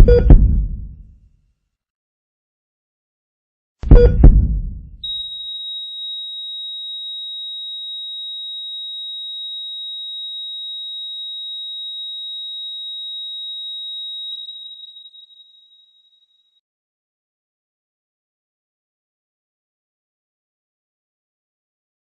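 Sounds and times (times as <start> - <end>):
high-pitched pure tone: 5.0 - 16.3.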